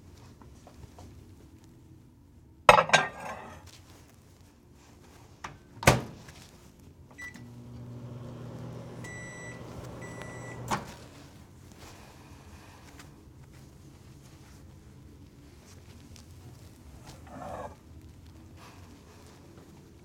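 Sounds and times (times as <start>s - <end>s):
dish clattering: 2.7s - 3.6s
microwave door clicking shut: 5.8s - 6.2s, 10.2s - 11.1s
microwave oven humming: 7.0s - 12.1s
keypad beeps: 9.0s - 10.8s.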